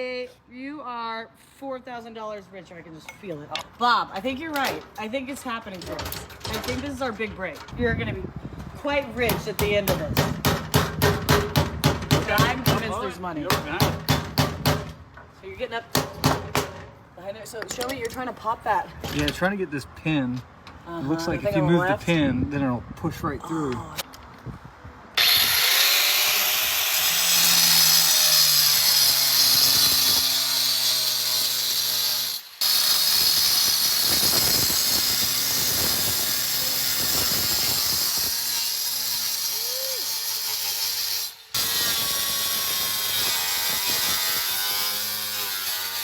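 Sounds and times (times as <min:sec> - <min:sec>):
power tool grinding metal: 0:25.2 - 0:46.0.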